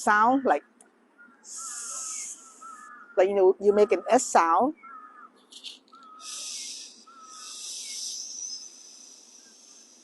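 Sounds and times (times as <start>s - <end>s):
hissing breath through teeth: 6.2s - 10.0s.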